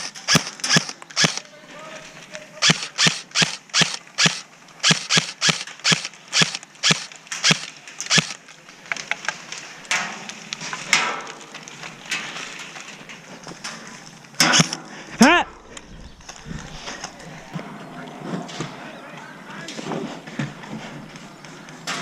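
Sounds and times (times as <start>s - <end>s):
airsoft rifle cracks: 0.0s - 1.5s, 14.4s - 14.8s
rustling of movement: 0.0s - 22.0s.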